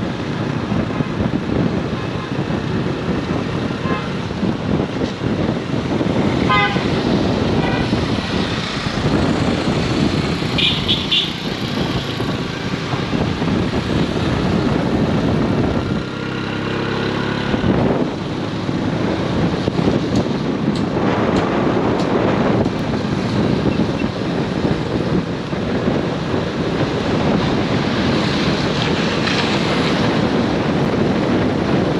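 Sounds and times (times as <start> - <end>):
busy road traffic: 0.0 - 31.9
horn toots: 6.4 - 8.0, 10.5 - 11.5.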